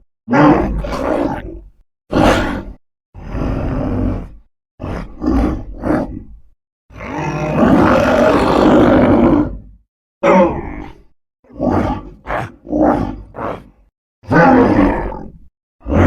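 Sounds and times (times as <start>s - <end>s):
monster growl: 0.3s - 6.2s, 6.9s - 16.0s
monster roar: 0.3s - 6.2s, 6.9s - 16.0s
monster grunts: 11.7s - 13.8s.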